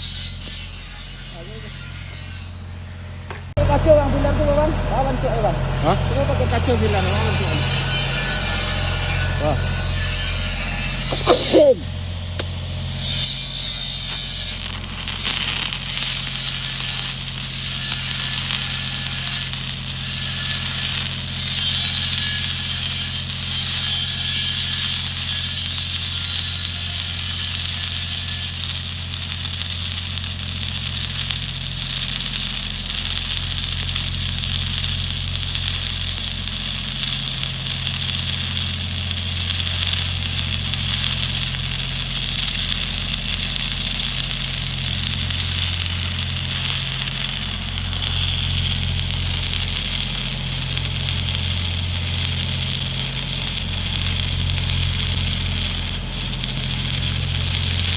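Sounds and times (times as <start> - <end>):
welding arc crackling and hissing: 0.0 - 57.9
low hum: 2.4 - 15.9.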